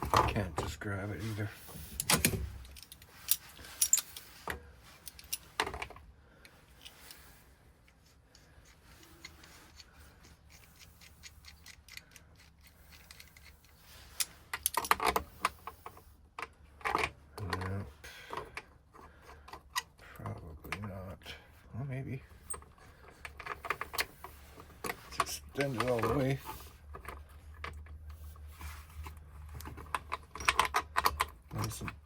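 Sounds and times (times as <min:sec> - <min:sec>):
metal parts clicking and tapping: 0:01.9 - 0:06.0, 0:07.8 - 0:17.7, 0:22.4 - 0:28.2, 0:29.0 - 0:32.0.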